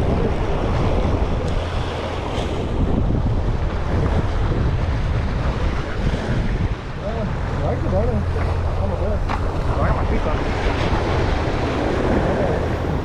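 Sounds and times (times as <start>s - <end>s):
surf washing against rocks: 0.0s - 13.0s
wind buffeting microphone: 0.0s - 13.0s.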